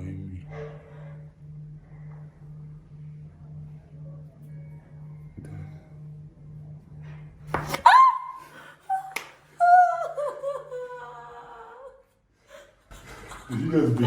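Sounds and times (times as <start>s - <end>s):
woman shrieking: 7.8s - 12.0s
woman laugh-crying: 7.8s - 12.8s.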